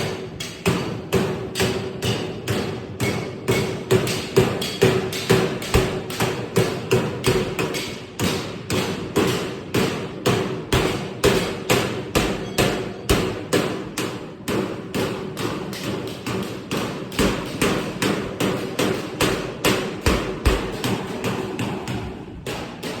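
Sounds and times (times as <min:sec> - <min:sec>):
hammer striking sheet metal: 0:00.0 - 0:23.0.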